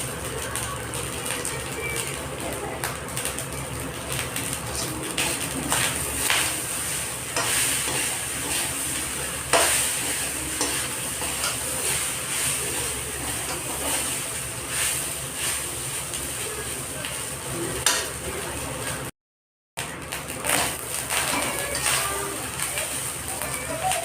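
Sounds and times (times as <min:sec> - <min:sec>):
rice sizzling in a pan: 0:00.0 - 0:19.1, 0:19.8 - 0:24.0
spoon scraping and knocking pan: 0:07.2 - 0:14.2.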